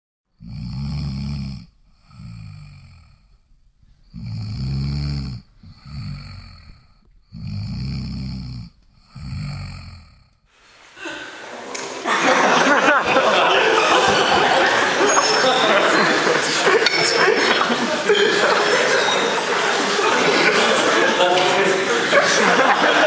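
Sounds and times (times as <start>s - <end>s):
loud snoring: 0.3s - 10.6s
quiet breath: 0.3s - 11.7s.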